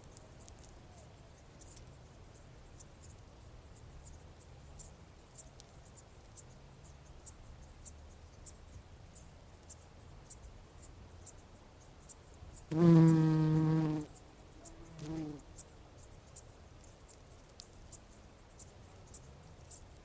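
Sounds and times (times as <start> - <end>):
bumblebee buzzing: 12.7 - 14.1, 14.9 - 15.4
soft ticks: 16.3 - 20.0.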